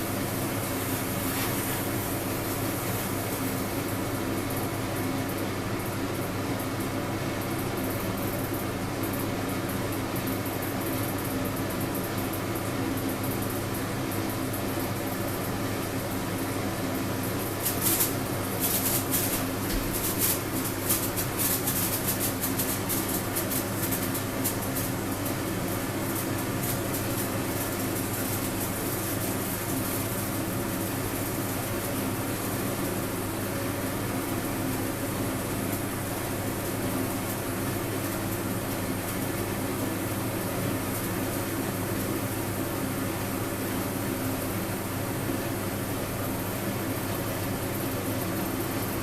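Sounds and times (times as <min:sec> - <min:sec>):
sparkler crackling: 0:17.5 - 0:31.4.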